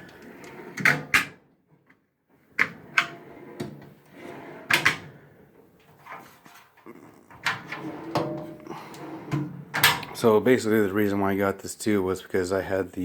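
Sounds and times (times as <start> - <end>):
steel drawers sliding: 2.6 - 5.1, 7.4 - 10.2.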